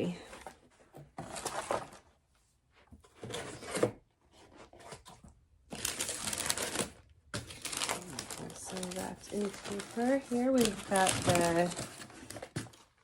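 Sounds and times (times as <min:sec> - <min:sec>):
packing paper crinkling: 0:05.7 - 0:13.0.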